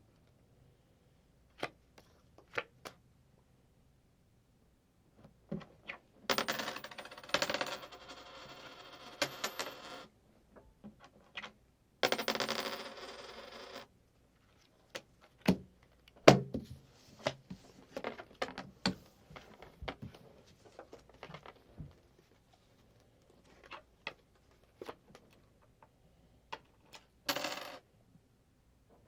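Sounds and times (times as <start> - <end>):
coins clinking: 12.0 - 13.8, 27.3 - 27.8.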